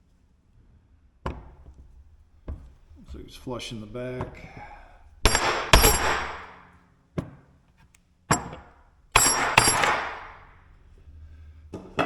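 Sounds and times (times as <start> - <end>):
hard objects knocking and rattling: 1.3 - 6.6, 8.3 - 10.6.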